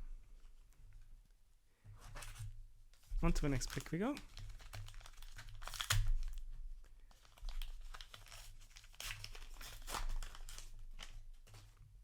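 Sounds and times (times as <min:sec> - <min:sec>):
wrapper crinkling: 0:03.4 - 0:06.5, 0:07.1 - 0:11.7
booster pack tearing open: 0:03.7 - 0:06.4.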